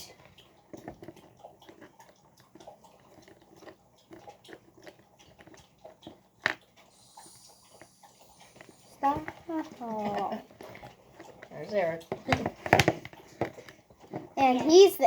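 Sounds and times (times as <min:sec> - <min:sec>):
plastic creaks and clicks: 0:08.6 - 0:14.4.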